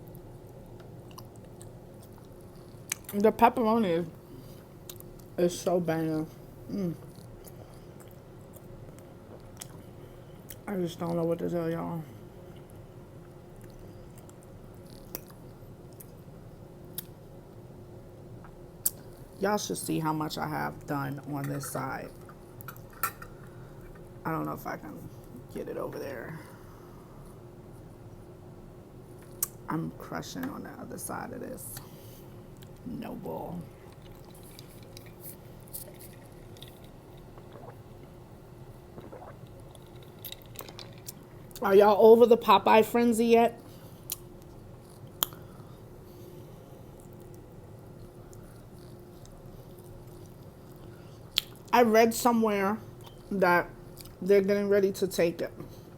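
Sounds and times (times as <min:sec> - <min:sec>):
quiet chewing: 0:00.1 - 0:03.2, 0:07.0 - 0:10.6, 0:12.5 - 0:16.2, 0:33.7 - 0:38.2, 0:38.9 - 0:41.6, 0:43.6 - 0:51.7
mouth clicks: 0:39.0 - 0:39.4.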